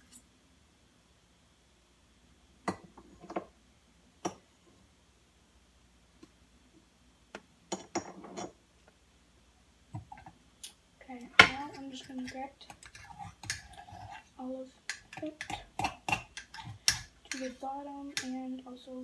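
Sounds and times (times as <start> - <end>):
utensil clinking against container: 11.4 - 14.3, 14.9 - 17.6.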